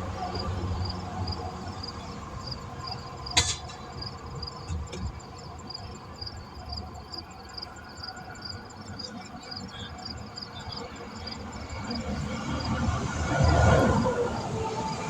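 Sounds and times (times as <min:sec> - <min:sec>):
passing vehicle: 0:00.0 - 0:05.4, 0:10.2 - 0:15.0
highway traffic rumble: 0:00.0 - 0:15.0
insects chirping: 0:00.0 - 0:15.0.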